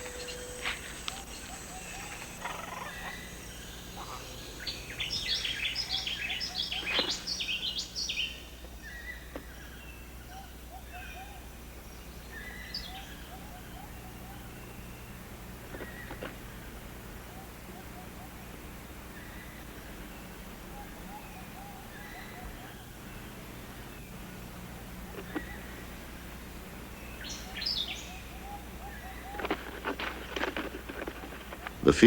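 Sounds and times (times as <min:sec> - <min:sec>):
high bird chirping: 0:00.0 - 0:09.2
short lower bird calls: 0:00.0 - 0:29.8.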